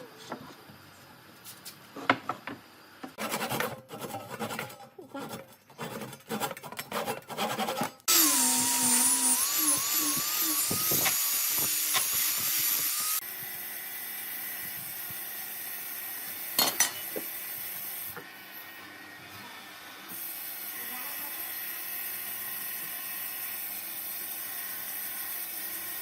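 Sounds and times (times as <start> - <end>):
power tool whining on wood: 7.0 - 26.0.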